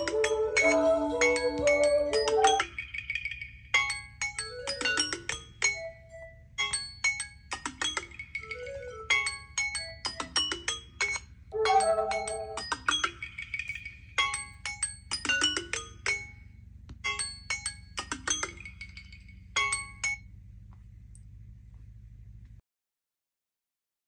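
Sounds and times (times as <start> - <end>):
phone ringtone melody: 0.0 - 2.7, 11.6 - 12.8
faint low hum: 18.9 - 22.6.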